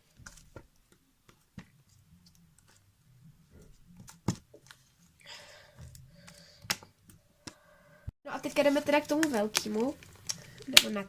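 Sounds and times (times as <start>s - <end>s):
slime containers handling: 8.4s - 11.0s.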